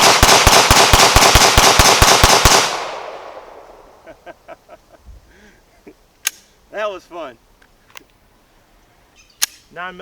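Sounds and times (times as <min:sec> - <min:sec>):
pistol fired rapidly: 0:00.0 - 0:03.4.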